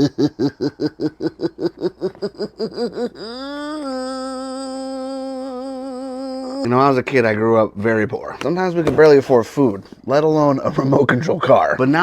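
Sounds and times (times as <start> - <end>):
person laughing: 0.0 - 6.7.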